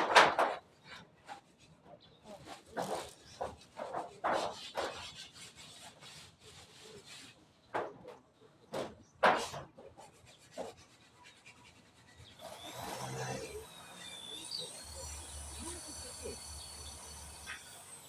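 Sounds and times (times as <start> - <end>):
wood being scraped: 2.4 - 8.0, 9.2 - 18.0.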